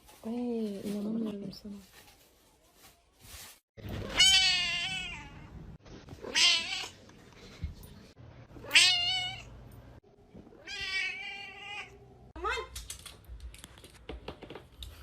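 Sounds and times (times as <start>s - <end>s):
cat meowing: 4.0s - 5.5s.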